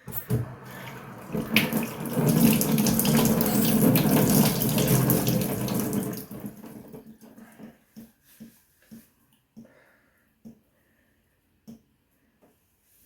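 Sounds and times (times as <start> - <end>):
water running from tap into sink: 0.0 - 7.4.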